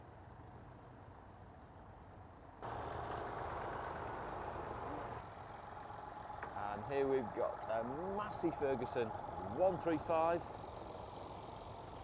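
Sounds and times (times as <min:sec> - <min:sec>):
tractor engine running: 0:02.6 - 0:12.0.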